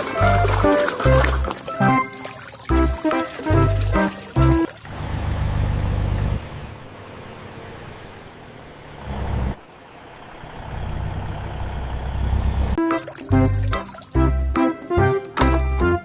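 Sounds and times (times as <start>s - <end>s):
music with pitched notes: 0.0s - 4.7s, 12.8s - 16.0s
vehicle engine rumbling: 2.7s - 12.8s.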